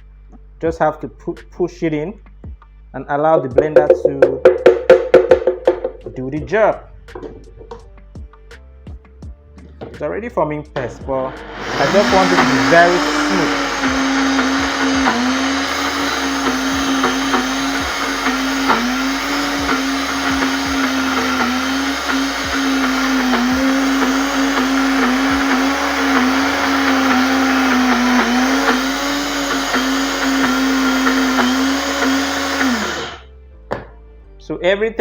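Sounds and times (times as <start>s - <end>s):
blender motor grinding: 10.8s - 33.2s.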